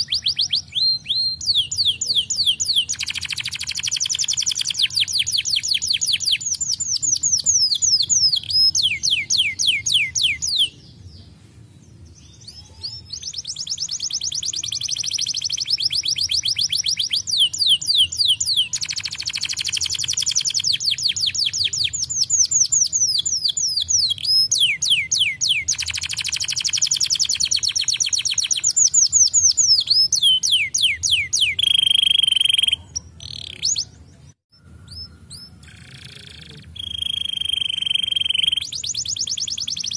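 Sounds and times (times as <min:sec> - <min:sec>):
canary singing trills: 0:00.0 - 0:39.9
held whistle: 0:13.8 - 0:32.8, 0:34.5 - 0:39.9.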